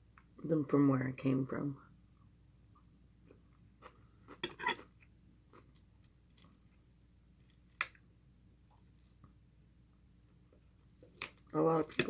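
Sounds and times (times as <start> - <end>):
cutlery clinking on a plate: 4.4 - 4.9.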